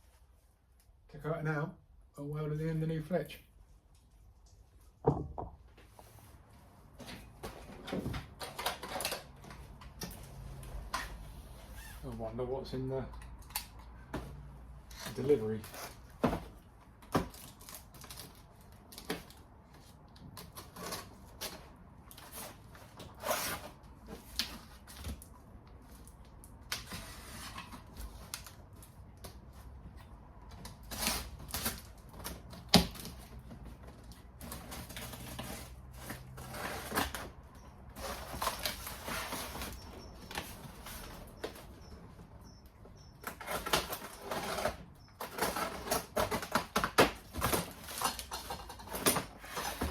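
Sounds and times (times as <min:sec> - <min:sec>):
cardboard and wrapping rustling: 0:14.2 - 0:42.3, 0:43.2 - 0:49.9.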